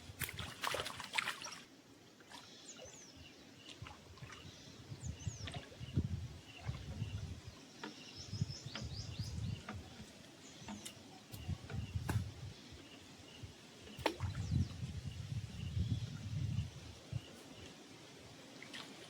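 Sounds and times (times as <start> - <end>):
birds chirping: 2.3 - 17.8
wind buffeting microphone: 3.8 - 10.1, 10.7 - 12.6, 13.3 - 17.4.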